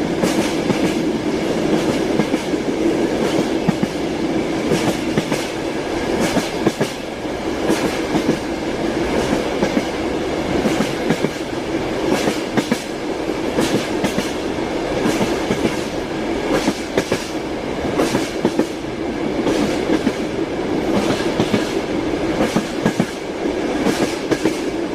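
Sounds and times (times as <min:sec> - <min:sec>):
railway car rumble and hum: 0:00.0 - 0:24.9
train wheels clattering over rail joints: 0:04.6 - 0:07.0, 0:10.6 - 0:12.9, 0:13.5 - 0:14.4, 0:15.0 - 0:18.8, 0:22.4 - 0:23.2.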